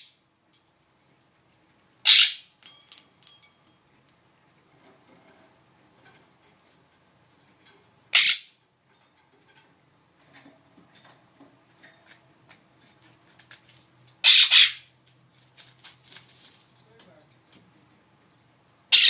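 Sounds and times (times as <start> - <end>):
bird squawking: 2.1 - 2.4, 8.1 - 8.5, 14.2 - 14.9.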